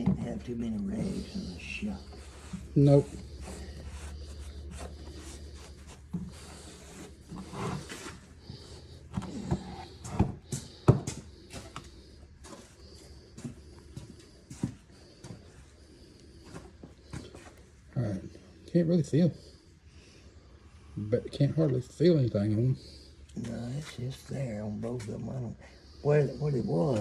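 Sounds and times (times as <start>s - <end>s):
rag rubbing metal: 0.0s - 8.1s.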